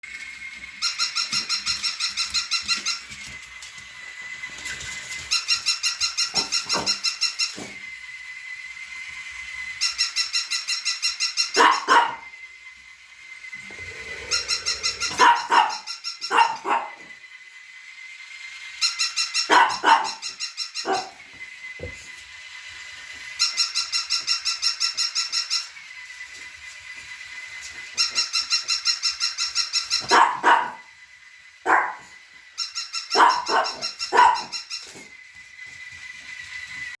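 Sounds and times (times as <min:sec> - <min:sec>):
dog barking: 0:11.6 - 0:12.3, 0:15.0 - 0:17.1, 0:19.5 - 0:21.2, 0:30.0 - 0:30.9, 0:31.6 - 0:32.1, 0:33.1 - 0:34.6.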